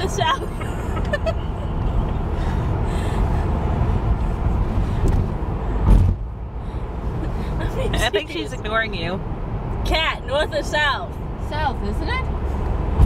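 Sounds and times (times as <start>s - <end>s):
car cabin road and engine rumble: 0.0s - 13.0s
single thump: 5.0s - 6.2s.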